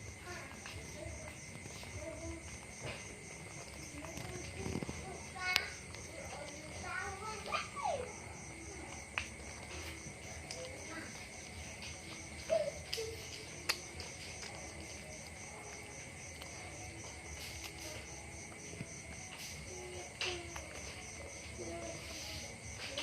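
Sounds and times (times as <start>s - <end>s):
insects trilling: 0.0s - 23.0s.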